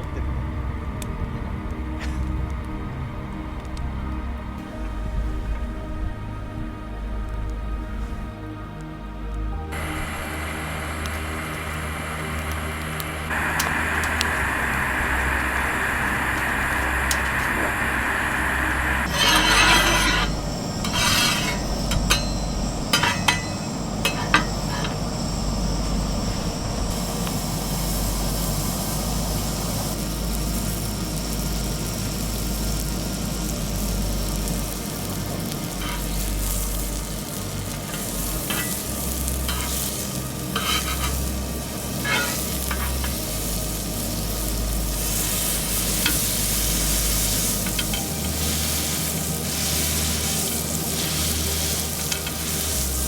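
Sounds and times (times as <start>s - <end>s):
food sizzling in a pan: 9.7s - 53.0s
utensil clinking and scraping: 19.1s - 25.8s, 35.8s - 36.4s, 37.9s - 43.3s, 47.4s - 53.0s.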